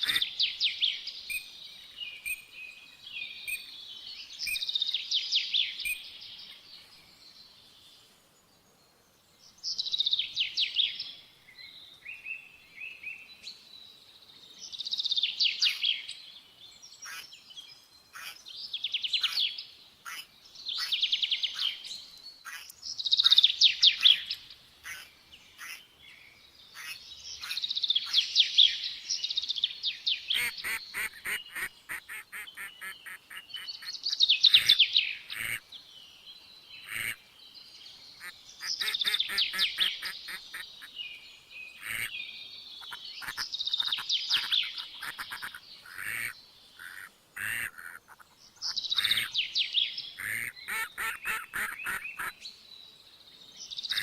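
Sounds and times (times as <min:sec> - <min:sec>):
songbird trilling: 0:30.2 - 0:35.6, 0:36.8 - 0:37.2, 0:38.2 - 0:52.4, 0:53.7 - 0:54.0.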